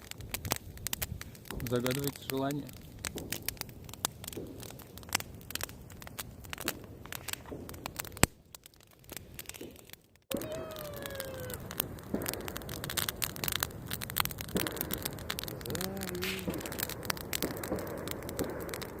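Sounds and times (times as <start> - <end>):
bonfire crackling and popping: 0.0 - 19.0
falling whistle-like tone: 10.3 - 11.8
short voice-like sound: 10.3 - 11.8, 15.6 - 16.6.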